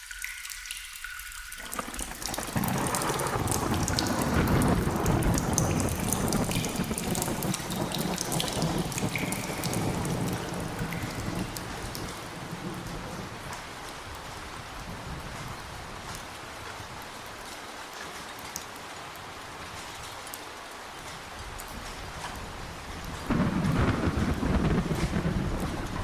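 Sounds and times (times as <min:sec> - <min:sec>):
drips: 0:00.0 - 0:14.3
rain falling: 0:00.0 - 0:26.0
thunder rumbling: 0:01.6 - 0:16.1, 0:22.2 - 0:26.0.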